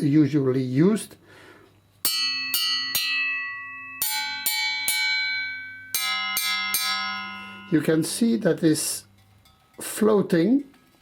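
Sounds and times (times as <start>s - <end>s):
iron bells struck with beater: 2.0s - 9.8s.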